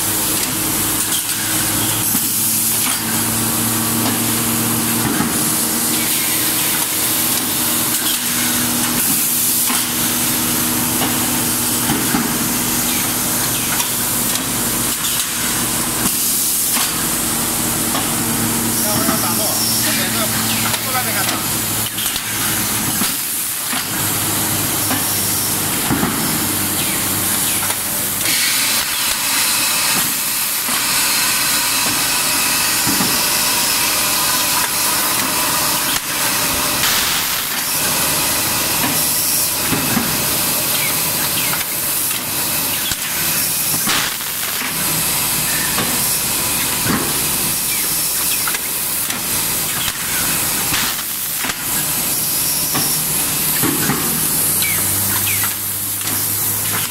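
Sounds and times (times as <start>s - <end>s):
pneumatic mechanism clacking: 0.2s - 3.3s, 4.0s - 17.2s, 17.8s - 56.9s
compressed air hissing: 26.4s - 46.2s.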